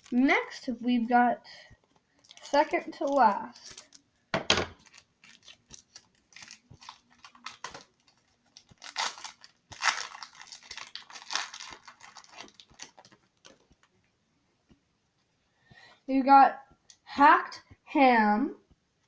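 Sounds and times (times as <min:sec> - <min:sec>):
packaging crinkling and tearing: 0:01.9 - 0:04.1, 0:04.7 - 0:13.9.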